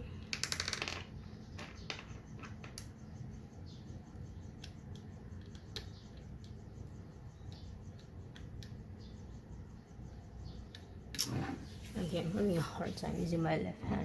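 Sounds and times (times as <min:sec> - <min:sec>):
parts clicking and tapping: 0:04.5 - 0:08.9, 0:10.6 - 0:11.3.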